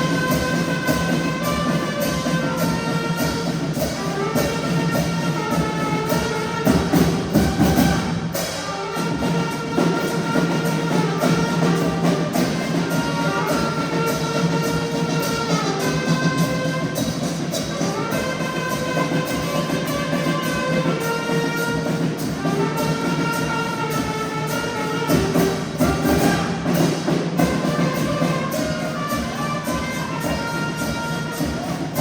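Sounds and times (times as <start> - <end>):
latin dance music with brass: 0.0 - 32.0.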